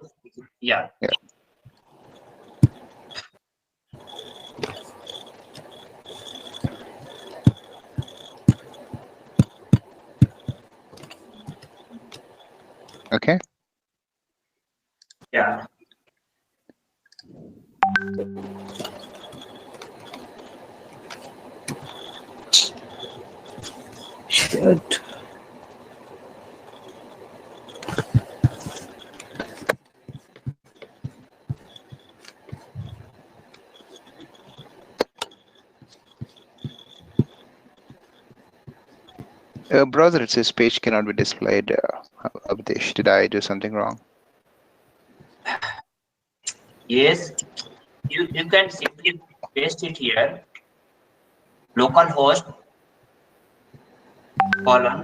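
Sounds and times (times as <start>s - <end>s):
background hiss: 0.0s - 13.7s, 14.4s - 55.0s
faint high tone: 17.8s - 19.2s, 54.4s - 55.0s.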